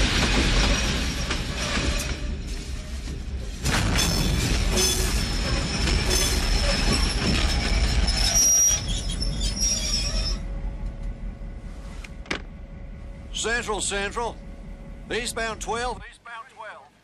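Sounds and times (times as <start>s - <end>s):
train rumbling on rails: 0.0s - 16.0s
steel wheels squealing: 4.0s - 10.5s.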